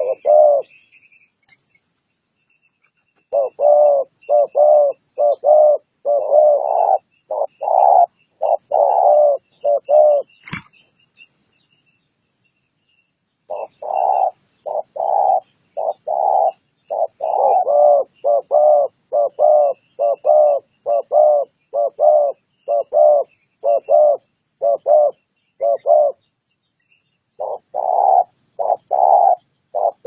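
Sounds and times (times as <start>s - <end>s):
dove cooing: 0.0s - 0.8s, 3.2s - 10.6s, 13.5s - 26.2s, 27.4s - 30.0s.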